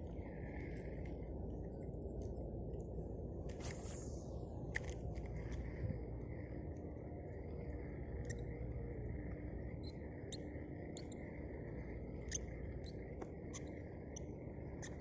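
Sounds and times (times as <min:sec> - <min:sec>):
low steady hum: 0:00.0 - 0:15.0
low rumble: 0:03.5 - 0:06.5.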